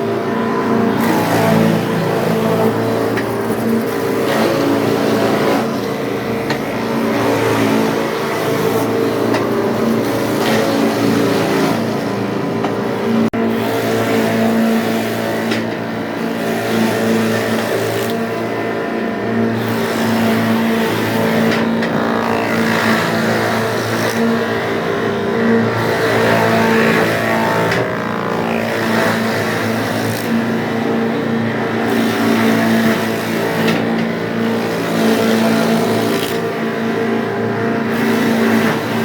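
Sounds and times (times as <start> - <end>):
wood crusher machine droning: 0.0 - 39.0.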